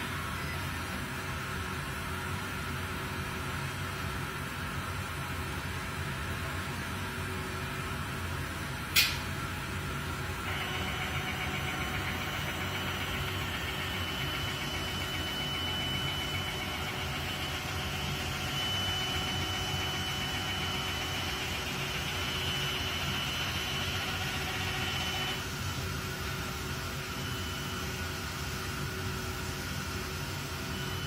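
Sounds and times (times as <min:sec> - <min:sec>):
milling machine motor whine: 0:09.8 - 0:31.0.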